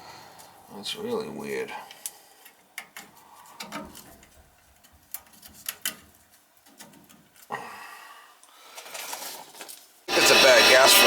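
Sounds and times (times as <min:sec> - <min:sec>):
faint background noise: 0:00.0 - 0:10.9.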